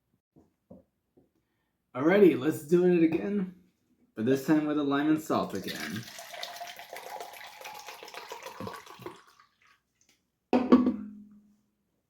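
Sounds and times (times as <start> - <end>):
liquid pouring into a cup: 5.4 - 9.8.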